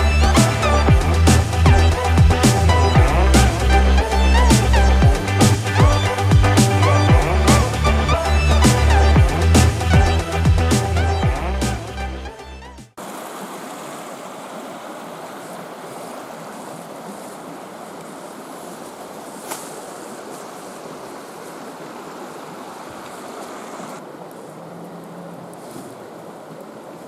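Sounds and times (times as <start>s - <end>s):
river flowing: 0.0s - 12.2s, 13.0s - 27.0s
background music: 0.0s - 13.0s.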